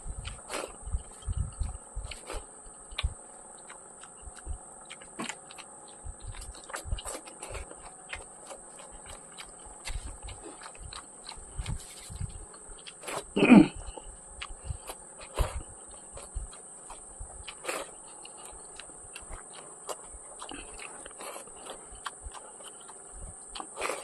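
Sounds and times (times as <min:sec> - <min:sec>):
soft low thumps: 0:00.0 - 0:03.2, 0:04.1 - 0:08.3, 0:09.8 - 0:12.5, 0:13.3 - 0:17.5
person chewing food: 0:00.0 - 0:24.0.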